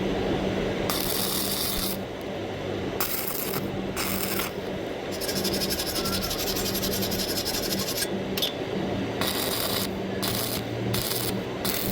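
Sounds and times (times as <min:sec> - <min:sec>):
steady low hum: 0:00.0 - 0:11.9
arc welding crackling hiss: 0:00.9 - 0:02.0, 0:03.0 - 0:04.6, 0:09.2 - 0:11.9.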